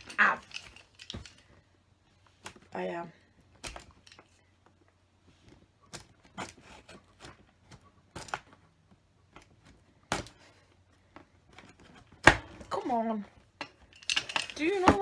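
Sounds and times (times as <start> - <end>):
clicks and scrapes on cardboard: 5.5 - 8.7.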